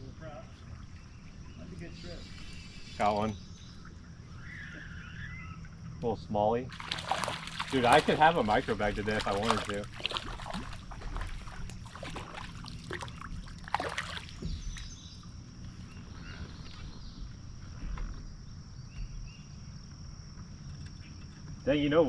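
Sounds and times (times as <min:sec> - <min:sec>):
high-pitched insect drone: 0:01.5 - 0:06.6.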